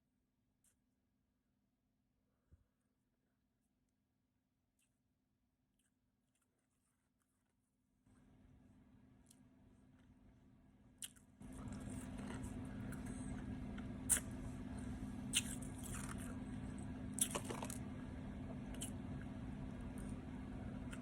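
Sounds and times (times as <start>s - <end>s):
steady low hum: 8.1s - 21.0s
ice crunching while chewed: 11.0s - 19.3s.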